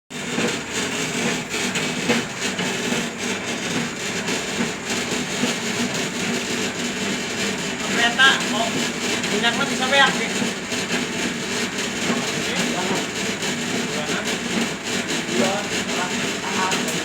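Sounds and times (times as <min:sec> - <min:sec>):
machine motor humming: 0:00.2 - 0:17.0.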